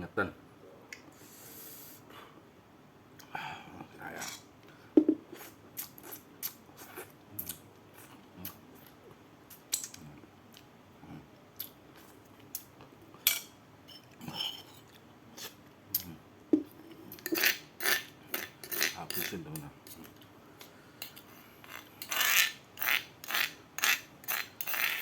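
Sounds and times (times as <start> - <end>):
utensil knocking on plate: 5.0 - 5.2.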